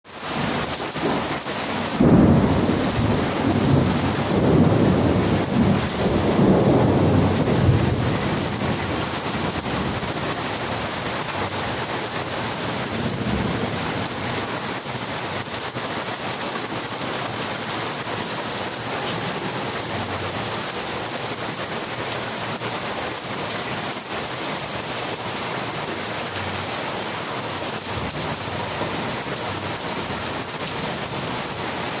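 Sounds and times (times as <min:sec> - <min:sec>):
rain pouring: 0:00.0 - 0:32.0
low rumble of thunder: 0:02.0 - 0:10.1.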